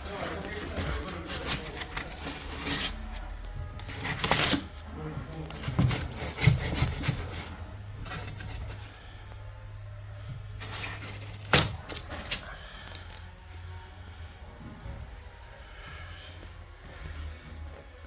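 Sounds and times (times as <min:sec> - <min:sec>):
rubbing and scraping on foam board: 0:00.0 - 0:09.0, 0:10.5 - 0:13.4.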